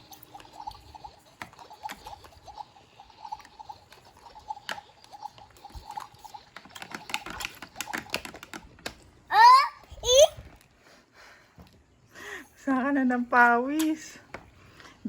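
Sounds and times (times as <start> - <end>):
plastic toy pieces tapping: 6.5 - 9.0.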